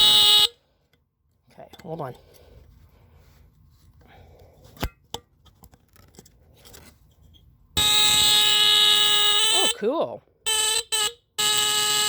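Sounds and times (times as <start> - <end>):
fire alarm horn buzzing: 0.0 - 0.6, 7.8 - 9.8, 10.5 - 12.0
faint handling noise: 0.9 - 7.7.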